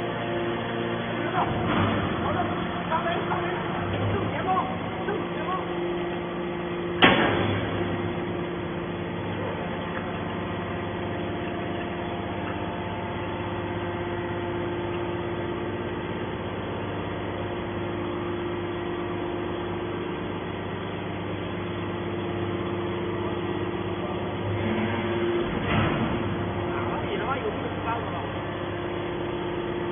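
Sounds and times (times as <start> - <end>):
hydraulic motor humming: 0.0 - 29.9.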